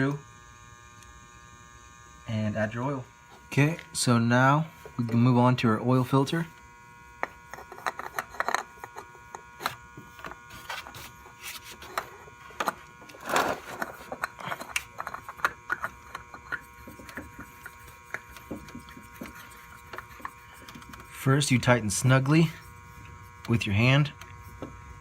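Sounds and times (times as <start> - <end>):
faint electrical hum: 0.0 - 25.0.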